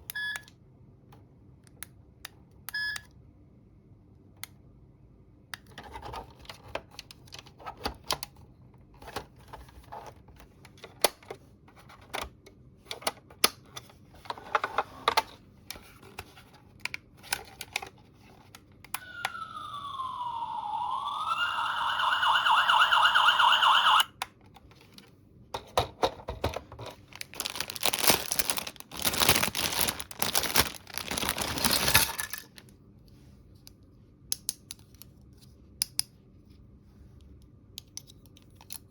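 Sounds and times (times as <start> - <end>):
electronic toy siren tone: 19.0 - 24.1
packaging rustling: 26.8 - 32.6.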